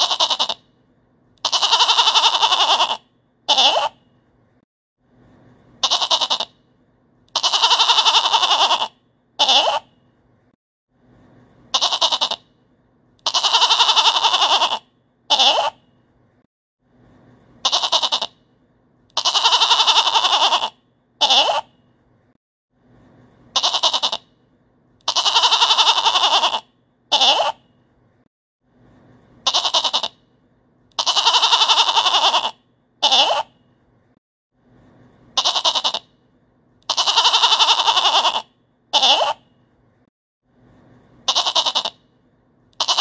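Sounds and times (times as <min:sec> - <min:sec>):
goat bleating: 0:00.0 - 0:00.6, 0:01.4 - 0:04.0, 0:05.8 - 0:06.5, 0:07.3 - 0:09.8, 0:11.7 - 0:12.4, 0:13.2 - 0:15.8, 0:17.6 - 0:18.3, 0:19.2 - 0:21.7, 0:23.5 - 0:24.2, 0:25.1 - 0:27.6, 0:29.4 - 0:30.2, 0:31.0 - 0:33.5, 0:35.4 - 0:36.0, 0:36.9 - 0:39.4, 0:41.3 - 0:42.0, 0:42.8 - 0:43.0
faint low hum: 0:00.0 - 0:43.0.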